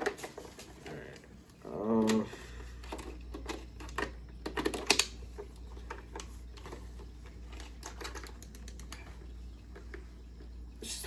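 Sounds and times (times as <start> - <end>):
plastic toy parts clicking: 2.0 - 5.2, 7.5 - 9.1.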